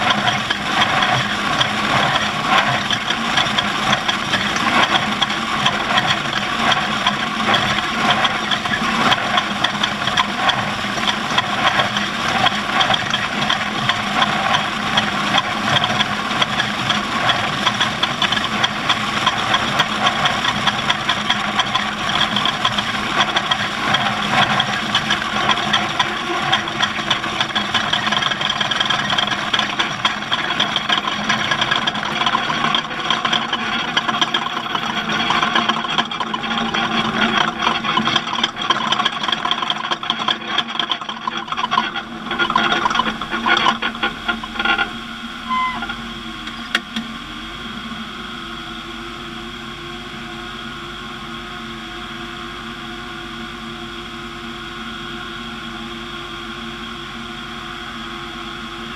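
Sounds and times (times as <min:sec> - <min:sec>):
heavy rattling and clatter: 0:00.0 - 0:47.2
off-road vehicle engine: 0:00.0 - 0:58.9
steady hum: 0:41.0 - 0:50.2.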